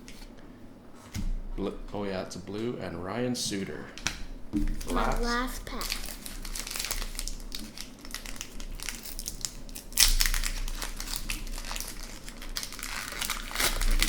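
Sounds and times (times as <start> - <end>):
foil wrapper crinkling: 4.8 - 14.0
foil pack ripping open: 5.2 - 14.0.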